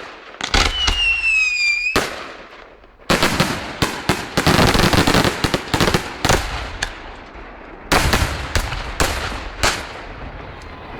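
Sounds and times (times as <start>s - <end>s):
fireworks bangs and crackles: 0.0s - 10.9s.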